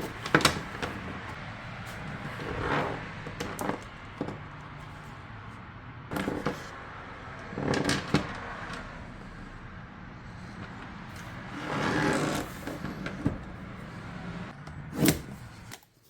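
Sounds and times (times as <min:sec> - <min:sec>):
handling clicks and knocks: 0:00.0 - 0:02.4, 0:06.1 - 0:09.0.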